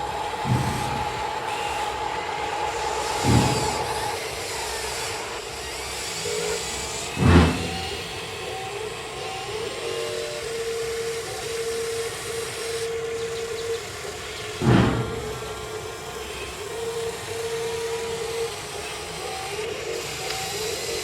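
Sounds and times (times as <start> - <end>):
heavy thumps: 0.0 - 5.0, 7.2 - 8.2, 14.6 - 15.8
electric motors and pump whining: 0.0 - 21.0.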